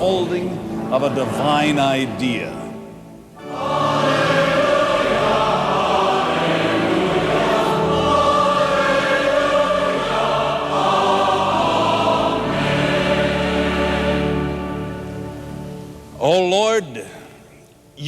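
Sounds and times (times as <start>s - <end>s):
choir singing: 3.4s - 16.1s.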